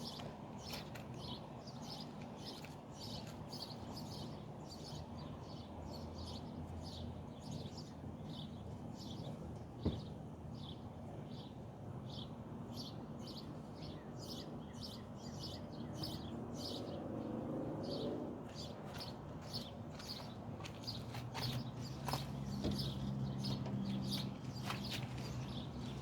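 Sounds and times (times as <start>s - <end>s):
birds chirping: 0.0s - 26.0s.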